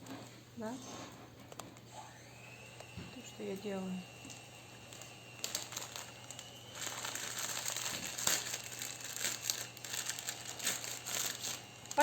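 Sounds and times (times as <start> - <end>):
wrapping crackling and rustling: 4.4 - 12.0.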